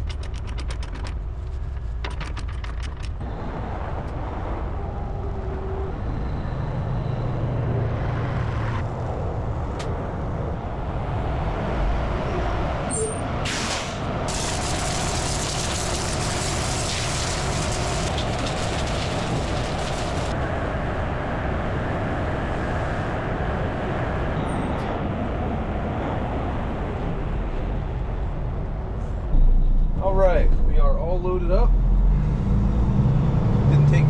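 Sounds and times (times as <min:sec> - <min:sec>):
ratcheting clicks: 0:00.0 - 0:01.2
air hiss: 0:13.5 - 0:20.4.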